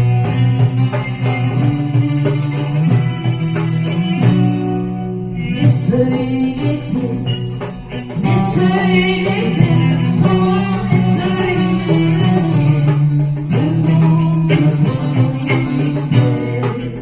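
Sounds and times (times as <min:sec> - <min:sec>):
plucked string instruments: 0:00.0 - 0:17.0
person singing: 0:03.9 - 0:17.0.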